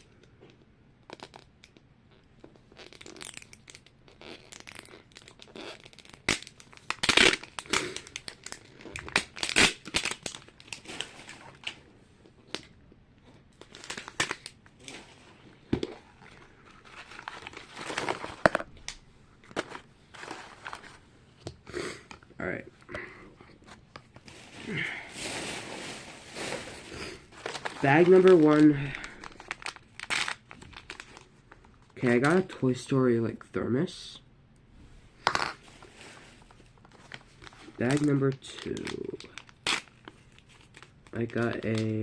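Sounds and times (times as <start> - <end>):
plastic wrapping crinkling and tearing: 2.7 - 11.8, 13.5 - 21.0, 24.1 - 32.5, 35.2 - 42.0.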